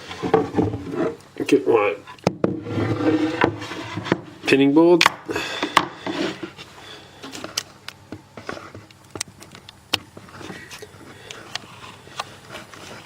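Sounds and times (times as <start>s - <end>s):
rubbing and rustling: 2.0s - 4.6s, 10.1s - 13.0s.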